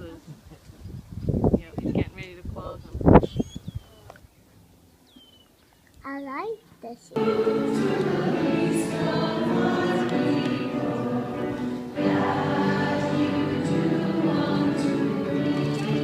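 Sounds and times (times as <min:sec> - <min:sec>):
choir singing held chords: 0:07.2 - 0:16.0.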